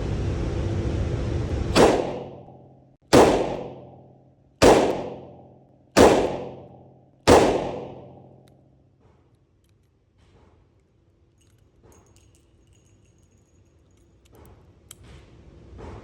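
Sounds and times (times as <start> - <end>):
revolver gunshots with echo: 1.7 - 8.5.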